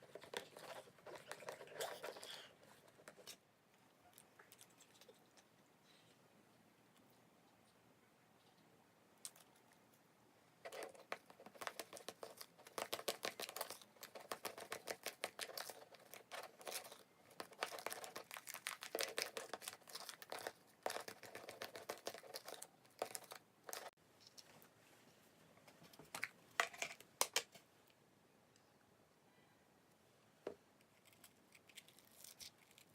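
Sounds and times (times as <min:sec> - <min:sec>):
corn puff snacks crunching: 0:11.5 - 0:23.9.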